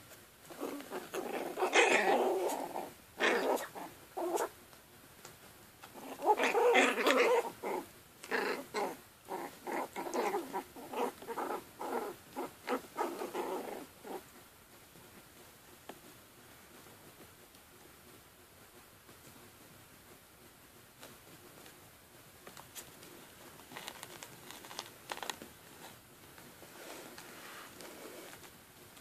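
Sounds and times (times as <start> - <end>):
puppies growling: 0.5 - 4.5, 5.8 - 14.3.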